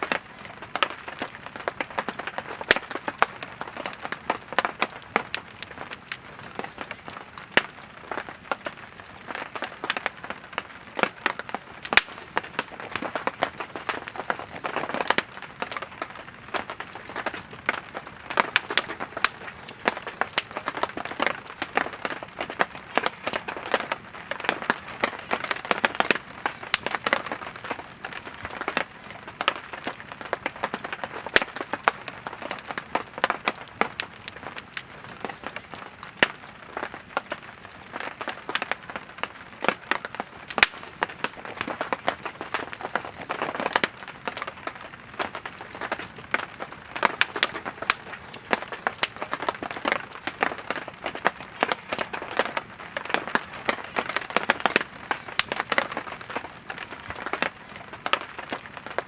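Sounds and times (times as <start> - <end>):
campfire crackling and popping: 0.0 - 59.0.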